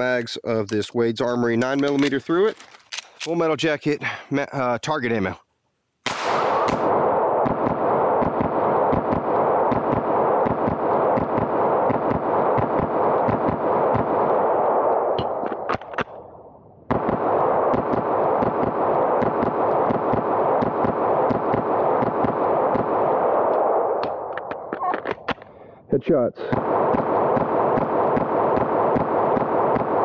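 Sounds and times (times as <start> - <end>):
gun clicks: 1.6 - 3.4
pistol firing rapidly: 6.1 - 14.9, 16.9 - 23.4, 26.5 - 30.0.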